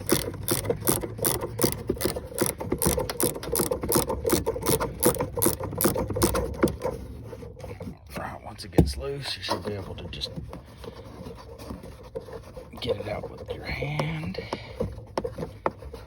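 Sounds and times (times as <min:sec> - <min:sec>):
hand ratchet clicking rapidly: 0:00.0 - 0:06.8.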